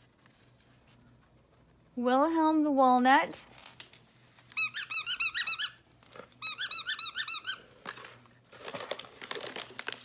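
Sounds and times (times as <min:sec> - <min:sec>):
dog toy squeaking: 0:04.6 - 0:05.8, 0:06.4 - 0:07.6
plastic packaging crinkling: 0:07.8 - 0:10.0.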